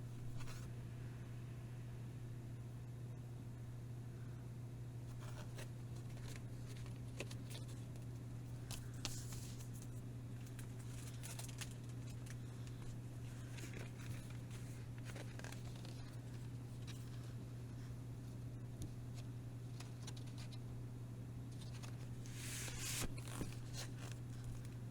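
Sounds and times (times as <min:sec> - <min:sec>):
packaging rustling and crinkling: 0:08.6 - 0:17.3, 0:21.6 - 0:24.8.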